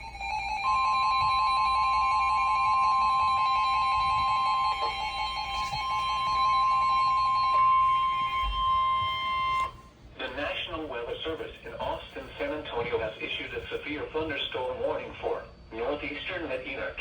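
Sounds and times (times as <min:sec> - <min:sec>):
loud steady alarm tone: 0:00.0 - 0:12.6.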